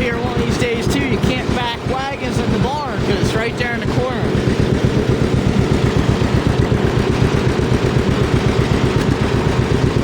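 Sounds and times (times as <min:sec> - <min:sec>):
two-cylinder engine running: 0:00.0 - 0:10.0.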